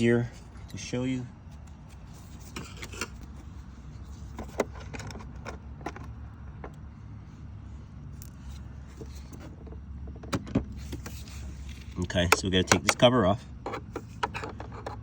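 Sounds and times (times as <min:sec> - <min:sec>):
steady low hum: 0:00.0 - 0:15.0
plastic clicks and knocks: 0:12.1 - 0:13.0.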